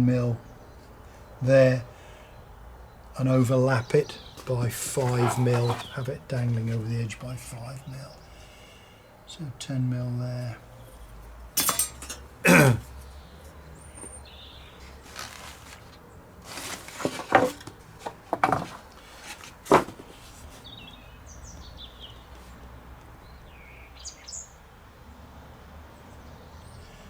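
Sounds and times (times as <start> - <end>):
tools knocking on workbench: 16.9 - 18.8, 19.7 - 20.0.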